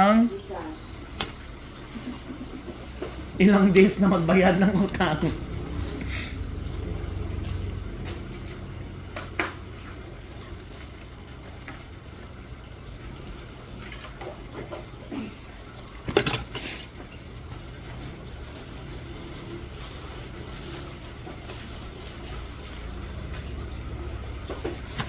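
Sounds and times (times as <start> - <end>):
low steady hum: 0.0 - 25.0
metal instruments clinking: 16.1 - 16.9.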